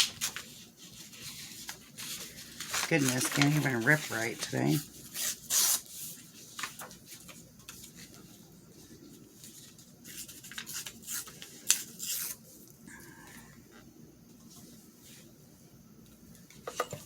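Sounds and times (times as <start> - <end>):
paper tearing and rustling: 0.0 - 8.2, 9.4 - 12.4.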